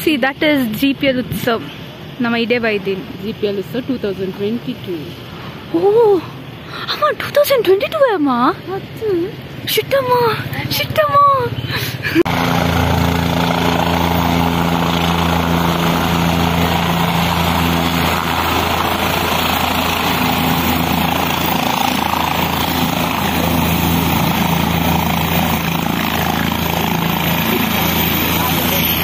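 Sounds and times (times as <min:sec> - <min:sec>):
helicopter engine and rotor drone: 0:09.4 - 0:29.0.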